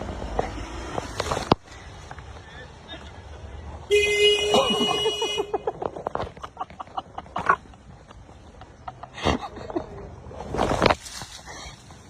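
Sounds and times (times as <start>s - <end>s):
buzzy car horn: 3.9s - 5.6s.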